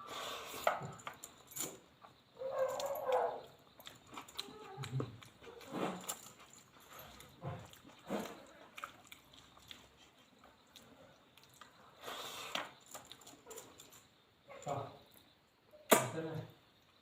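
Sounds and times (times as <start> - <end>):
person chewing food: 2.8 - 13.6.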